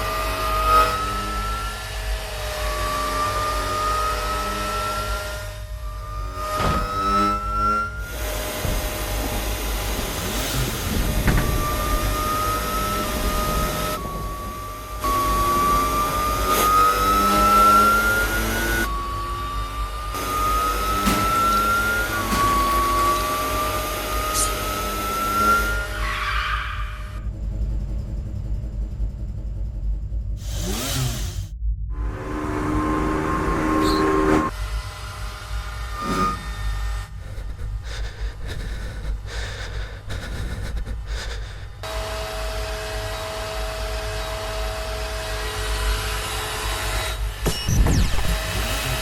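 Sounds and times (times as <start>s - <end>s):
low rumble: 0.0s - 16.7s, 27.1s - 30.7s, 31.3s - 34.6s
sci-fi engine whine: 0.0s - 49.0s
noisy sliding whoosh: 5.2s - 19.6s.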